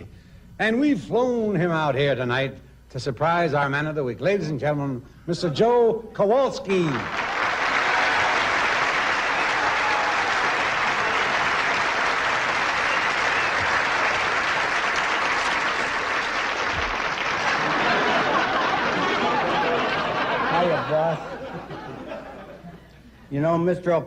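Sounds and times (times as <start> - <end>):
audience applauding: 6.8 - 22.1.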